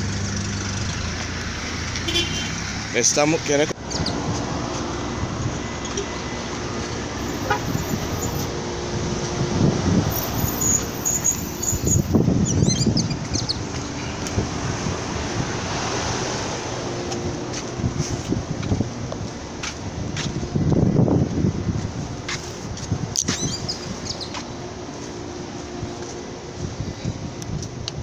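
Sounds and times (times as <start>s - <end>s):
vehicle engine running: 0.0s - 15.7s
road traffic: 0.0s - 28.0s
heavy low rumbles: 3.5s - 10.4s.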